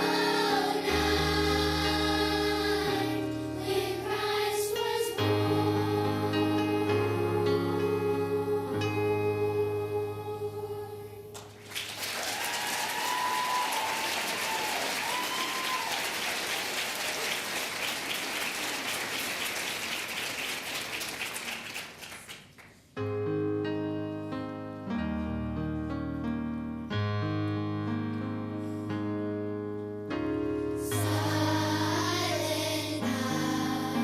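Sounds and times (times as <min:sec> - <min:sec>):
piano music: 0:00.0 - 0:11.7, 0:23.0 - 0:34.0
people cheering: 0:11.6 - 0:19.9
audience applauding: 0:11.6 - 0:22.8.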